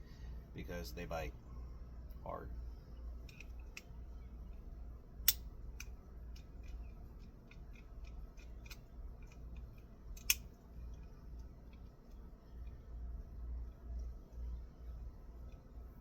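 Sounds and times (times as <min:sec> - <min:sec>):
sharp snaps: 0:05.2 - 0:06.5
metal tool clicks: 0:05.3 - 0:10.5.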